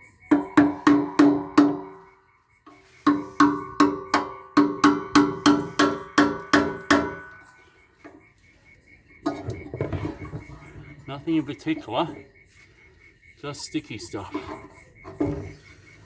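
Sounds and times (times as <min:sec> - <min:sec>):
hammer striking metal: 0:00.3 - 0:02.2, 0:03.1 - 0:07.6.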